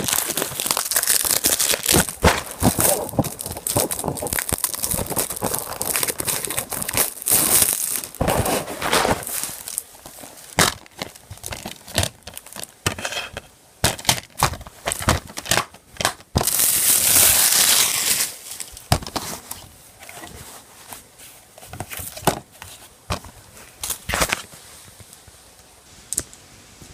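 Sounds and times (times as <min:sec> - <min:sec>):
loud rustling or tearing: 0:00.0 - 0:13.2, 0:16.4 - 0:20.6
plastic packaging crinkling: 0:00.0 - 0:20.4.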